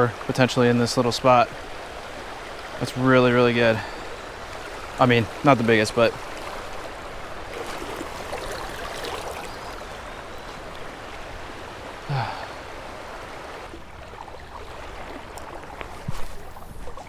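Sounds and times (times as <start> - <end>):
creek water running: 0.0 - 17.0
grunt falling in pitch: 12.1 - 12.6.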